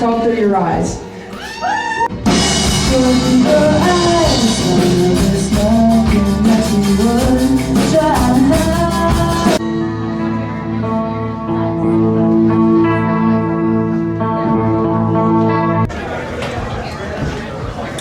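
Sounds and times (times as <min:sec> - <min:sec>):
steady drum beat: 0:02.1 - 0:09.6
live rock band playing: 0:02.1 - 0:15.9
person singing: 0:02.6 - 0:13.4.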